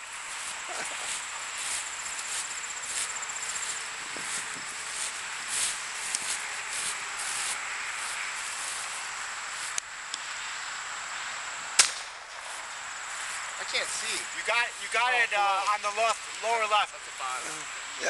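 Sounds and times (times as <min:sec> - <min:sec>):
insects chirping: 0:00.0 - 0:18.0
sharp crack: 0:11.7 - 0:12.4.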